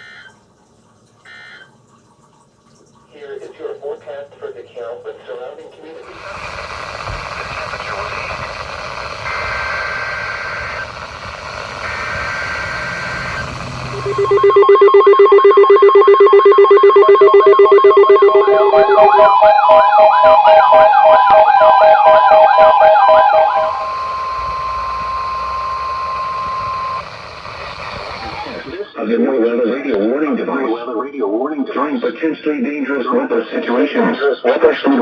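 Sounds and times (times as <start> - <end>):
buzzy data bursts: 6.1 - 28.9
fast warbling siren: 6.1 - 28.9
steady warning alarm tone: 6.1 - 28.9
rapid beeping: 6.1 - 29.0.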